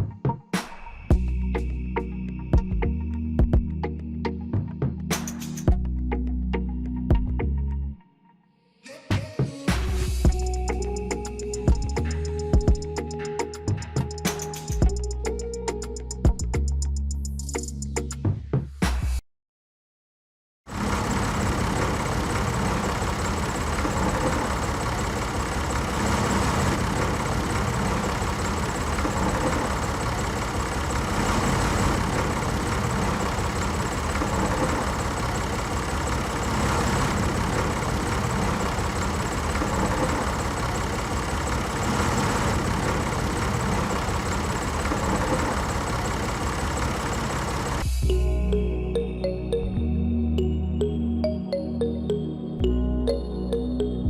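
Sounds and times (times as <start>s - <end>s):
machine humming and hissing: 20.8s - 47.9s.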